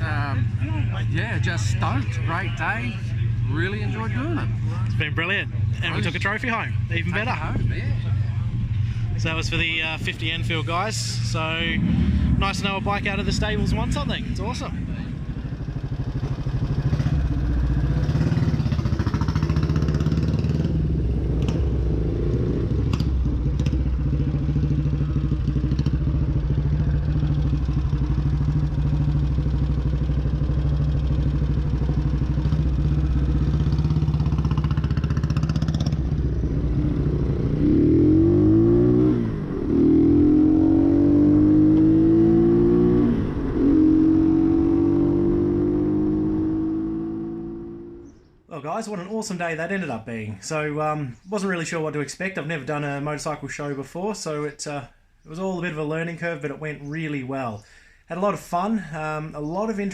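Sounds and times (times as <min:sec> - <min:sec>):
motorcycle engine accelerating: 0:05.5 - 0:48.3.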